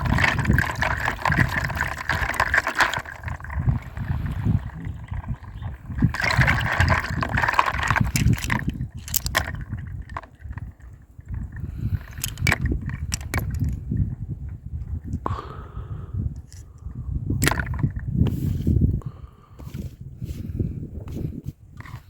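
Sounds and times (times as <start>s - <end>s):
rushing water: 0.0s - 9.6s
water sloshing in toy: 0.0s - 13.8s, 17.4s - 18.6s
sharp plastic clicks: 7.8s - 9.6s, 12.1s - 13.8s, 17.4s - 18.0s.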